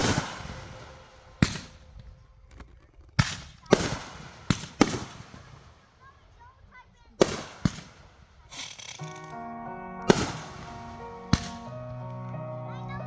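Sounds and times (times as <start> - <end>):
fireworks bangs: 0.0 - 2.1, 3.1 - 5.9, 7.1 - 9.3, 10.0 - 12.3.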